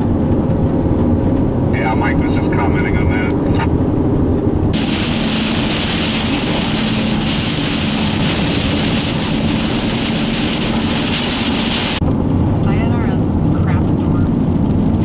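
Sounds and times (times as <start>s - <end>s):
vehicle low hum: 0.0s - 15.0s
storm wind rushing: 3.4s - 15.0s.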